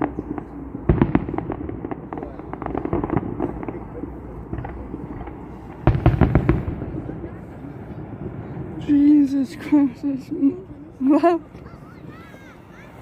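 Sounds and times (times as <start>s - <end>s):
fireworks loud bangs: 0.0s - 8.9s
fireworks crackling pops: 0.0s - 9.0s.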